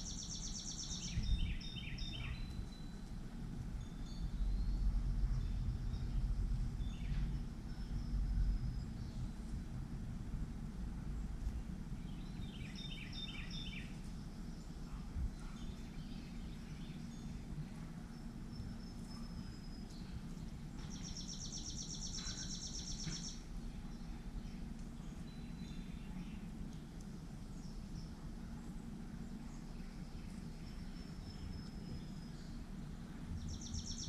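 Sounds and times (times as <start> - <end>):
low background rumble: 0.0 - 34.0
wild birds calling: 19.6 - 26.5.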